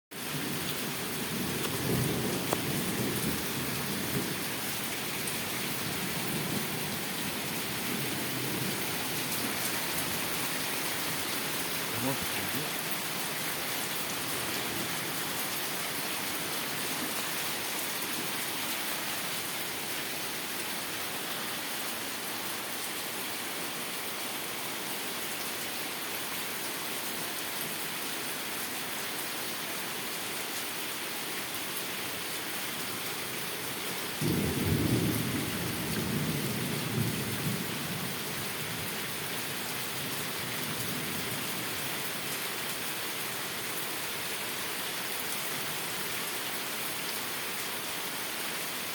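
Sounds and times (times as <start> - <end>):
heavy rain falling: 0.1 - 48.9
thunder rumbling: 1.3 - 4.4.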